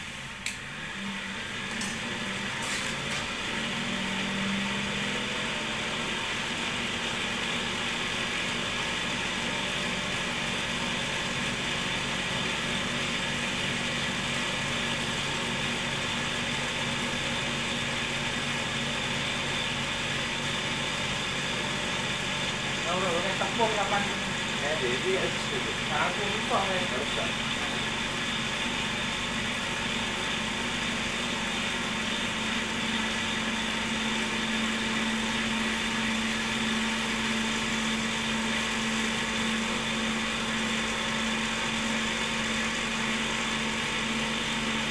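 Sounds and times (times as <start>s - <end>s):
motor running steadily: 0.0s - 44.9s
sharp click: 0.4s - 0.6s.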